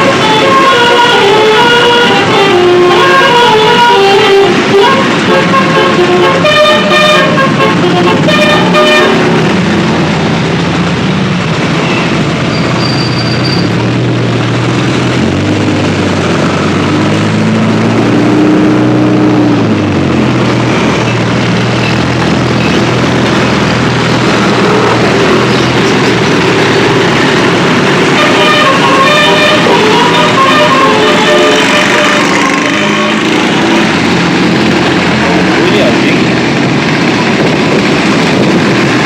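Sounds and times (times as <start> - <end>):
multi-tone bus horn melody: 0.0 - 10.0, 16.2 - 36.2
vehicle engine running: 0.0 - 39.0.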